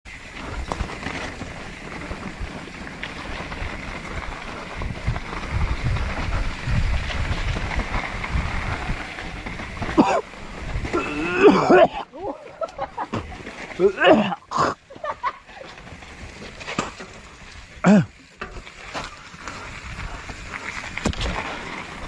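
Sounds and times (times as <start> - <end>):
mountain bike rolling on dirt: 0.0 - 22.0
wind buffeting microphone: 3.4 - 11.7
person crying out: 11.0 - 12.4, 13.8 - 14.5.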